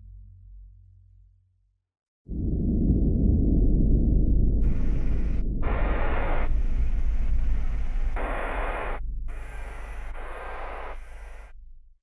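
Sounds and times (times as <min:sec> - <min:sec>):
deep steady rumble: 0:02.3 - 0:11.4
surges of hissing noise: 0:04.6 - 0:11.5.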